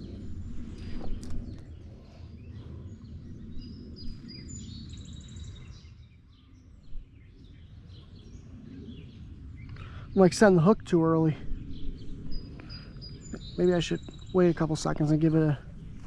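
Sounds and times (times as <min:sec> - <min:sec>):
small birds chirping: 0:00.0 - 0:15.9
low outdoor rumble: 0:00.0 - 0:16.0.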